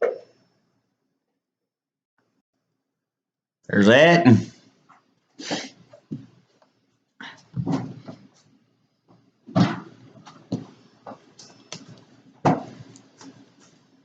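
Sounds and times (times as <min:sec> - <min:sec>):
knocks and clatters of handling: 0:07.4 - 0:08.4, 0:09.1 - 0:13.8.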